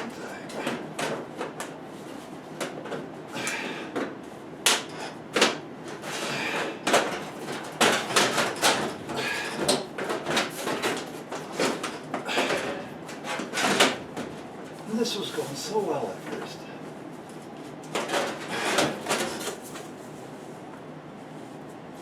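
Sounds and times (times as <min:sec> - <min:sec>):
sheet metal duct knocks and clanks: 0:06.3 - 0:14.0.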